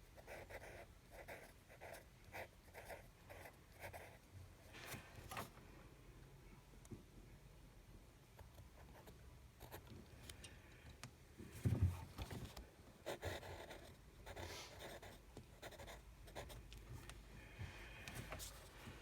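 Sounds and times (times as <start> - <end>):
pencil scratching on paper: 0.1 - 4.2, 13.0 - 16.6.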